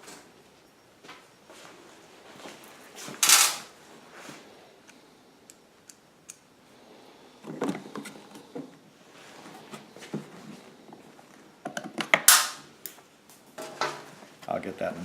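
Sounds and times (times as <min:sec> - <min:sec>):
plastic parts clattering: 0:03.2 - 0:03.7.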